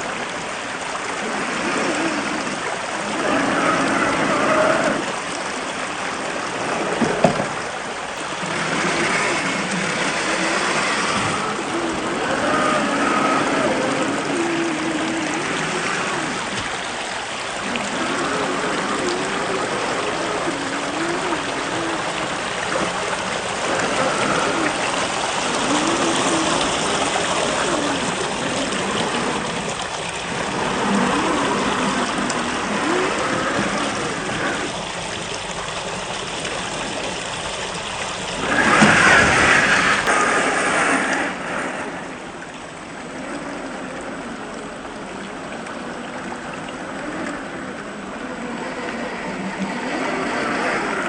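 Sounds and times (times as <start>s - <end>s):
stream water running: 0.0s - 51.0s
electric motor whine: 1.2s - 34.8s.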